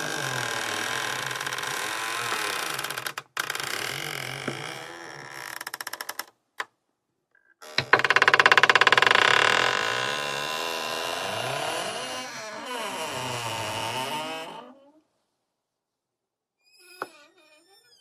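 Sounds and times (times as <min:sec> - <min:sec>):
door hinge creaking: 0:07.6 - 0:14.6, 0:16.8 - 0:18.0.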